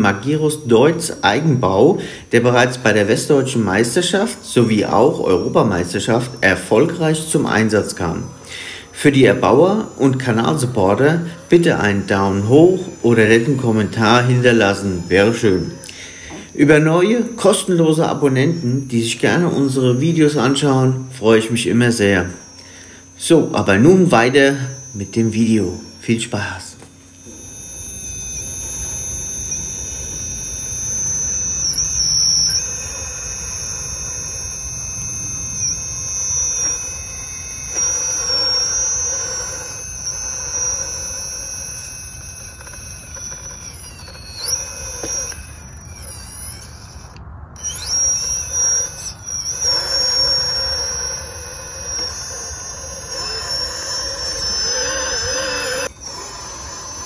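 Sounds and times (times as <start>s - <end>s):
electric motor whining: 0.0s - 57.0s.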